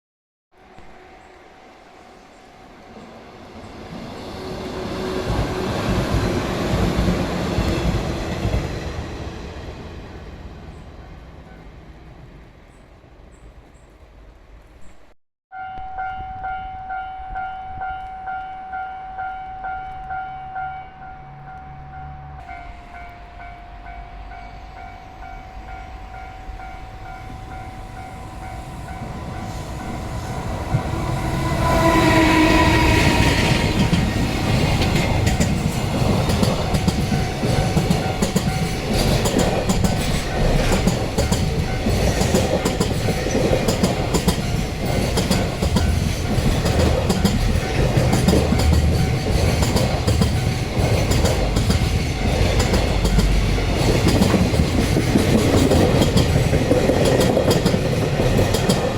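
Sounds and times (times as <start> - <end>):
train wheels clacking on rails: 3.9 - 9.8, 25.6 - 58.9
train horn blast: 15.5 - 34.7.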